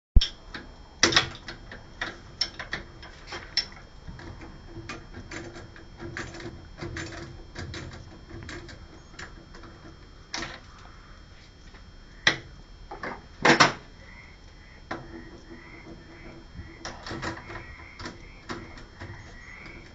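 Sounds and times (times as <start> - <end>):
metal parts clicking and knocking: 0.2 - 10.6, 14.9 - 19.9
faint steady hum: 0.2 - 19.9.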